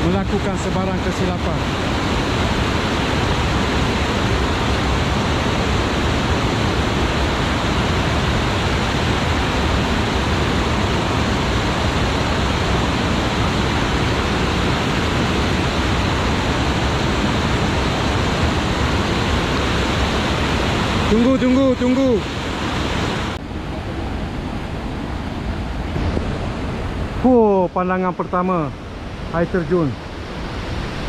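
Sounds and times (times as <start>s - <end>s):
river water and waterfall rushing: 0.0s - 31.0s.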